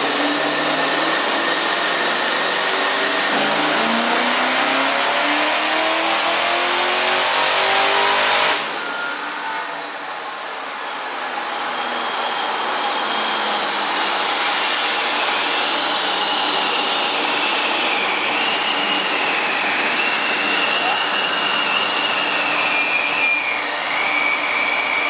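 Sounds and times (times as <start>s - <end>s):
car engine revving on dyno: 0.0s - 25.0s
faint high whine: 8.6s - 25.0s.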